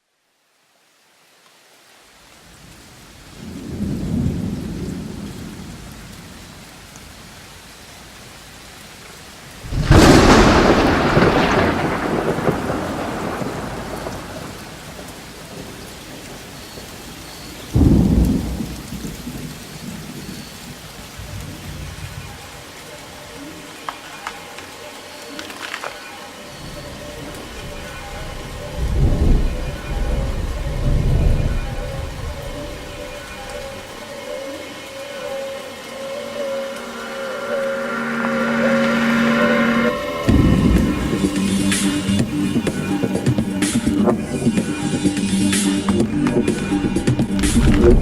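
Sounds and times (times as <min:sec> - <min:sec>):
steady rain: 0:00.0 - 0:48.0
thunder rumbling and cracking: 0:03.3 - 0:07.2, 0:09.6 - 0:22.4, 0:26.6 - 0:34.0, 0:36.7 - 0:48.0.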